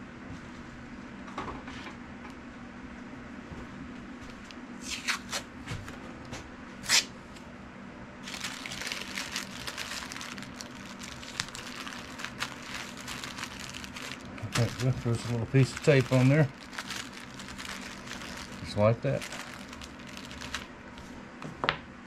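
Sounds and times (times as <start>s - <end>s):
wax paper crinkling: 8.2s - 21.2s.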